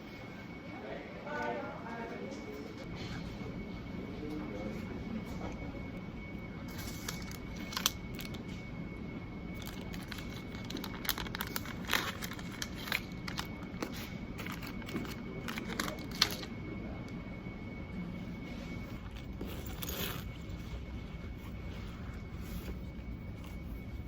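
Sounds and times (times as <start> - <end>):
room hum: 0.0 - 24.0
crinkling: 6.7 - 8.5, 9.5 - 16.6, 18.7 - 24.0.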